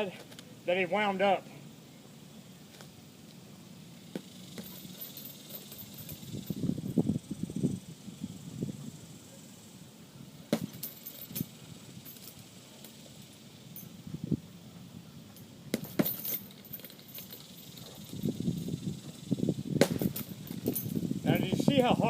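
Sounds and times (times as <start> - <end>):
light metallic clinking: 4.1 - 7.0, 10.6 - 14.0, 15.3 - 19.3, 19.9 - 21.9.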